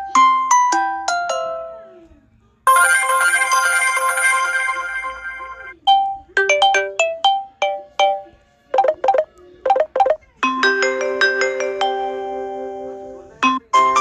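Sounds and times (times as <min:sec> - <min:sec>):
phone ringtone melody: 0:02.7 - 0:08.2, 0:08.8 - 0:12.7.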